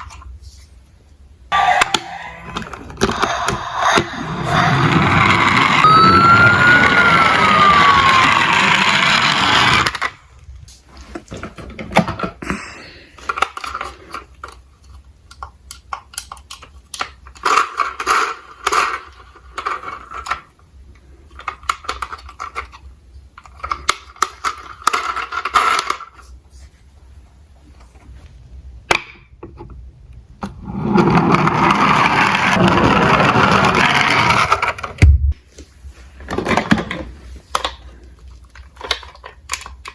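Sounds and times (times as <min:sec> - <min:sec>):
toy cars clinking and rattling: 0:01.5 - 0:10.2, 0:15.7 - 0:20.6, 0:21.3 - 0:26.3, 0:30.8 - 0:34.9
siren: 0:01.6 - 0:10.0.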